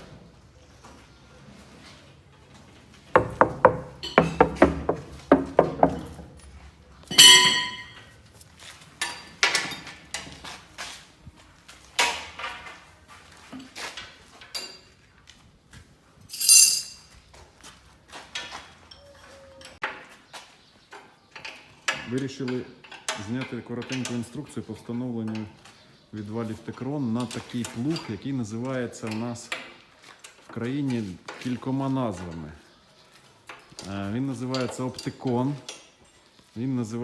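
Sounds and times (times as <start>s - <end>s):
metal knocking: 3.2s - 6.5s
ringing metal clinks: 7.1s - 8.0s, 16.3s - 17.0s.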